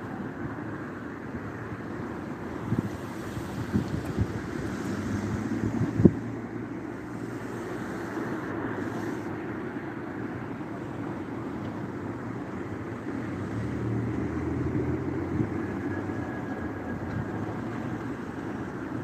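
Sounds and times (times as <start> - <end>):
city street noise: 0.0 - 19.0
vehicle passing: 2.8 - 9.3, 13.1 - 18.9.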